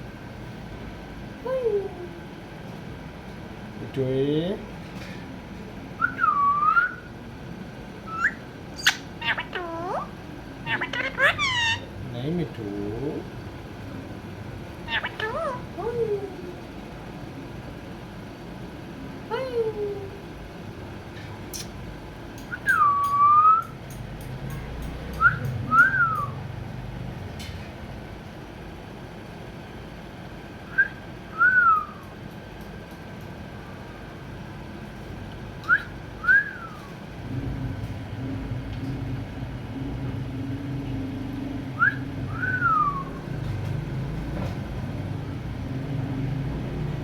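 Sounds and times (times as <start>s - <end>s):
steady low hum: 0.0s - 47.0s
parrot whistling: 6.0s - 7.1s, 8.1s - 11.9s, 22.5s - 23.8s, 25.2s - 26.4s, 30.7s - 32.0s, 35.6s - 37.0s, 41.8s - 43.3s.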